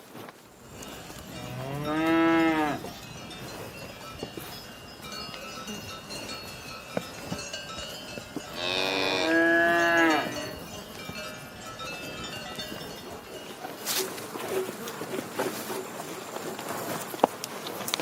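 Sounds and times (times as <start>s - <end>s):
faint high tinkling tones: 0.7s - 14.2s
cow mooing: 1.4s - 2.9s, 8.5s - 10.6s.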